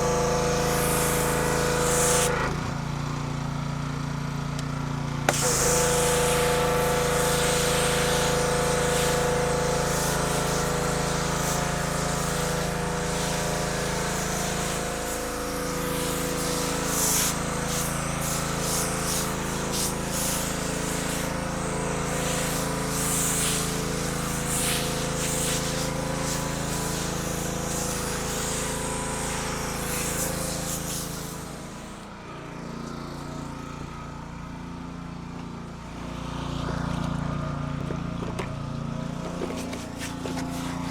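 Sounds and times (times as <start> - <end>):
water spray hissing: 0.0 - 2.4, 5.3 - 32.0, 39.2 - 40.9
pressure washer engine running: 0.0 - 40.9.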